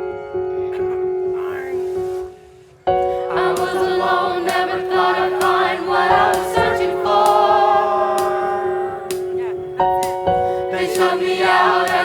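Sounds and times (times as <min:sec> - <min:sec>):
group singing wordless harmonies: 0:03.0 - 0:12.0.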